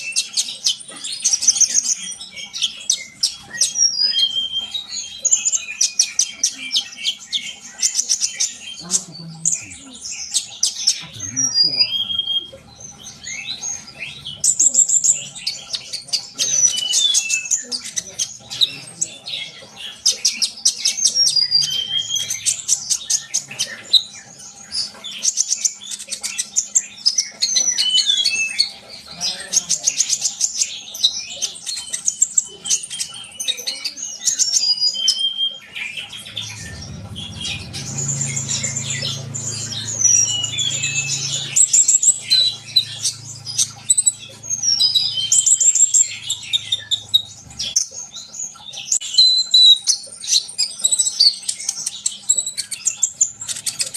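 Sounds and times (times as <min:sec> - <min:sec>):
bird singing: 0:00.0 - 0:53.9
low steady hum: 0:36.0 - 0:47.8.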